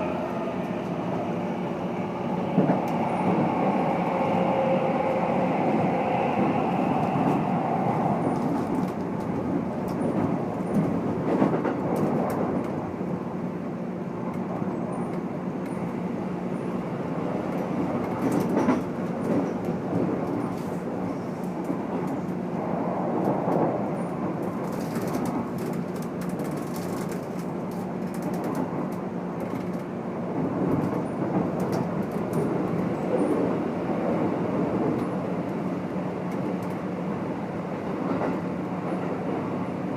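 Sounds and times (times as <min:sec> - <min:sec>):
train wheels rumbling on rails: 0:00.0 - 0:39.9
rail-joint clacks: 0:17.6 - 0:20.8.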